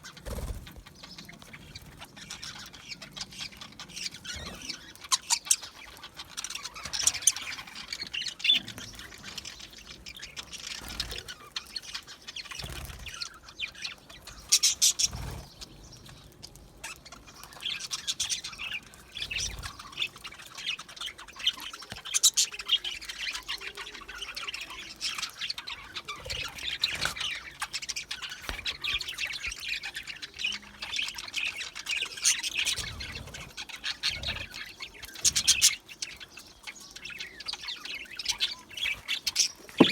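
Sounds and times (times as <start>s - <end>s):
budgies chattering and chirping: 0.0s - 39.9s.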